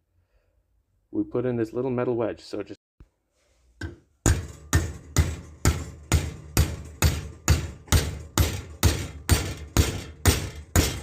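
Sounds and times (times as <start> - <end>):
hammer striking metal wedge: 3.8 - 11.0.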